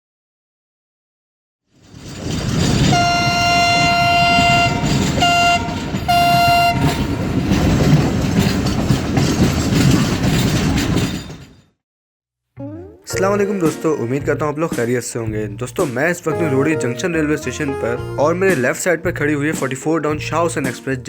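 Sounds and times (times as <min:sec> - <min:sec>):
train rumbling over tracks: 0:01.8 - 0:11.6
diesel locomotive horn: 0:02.8 - 0:07.4.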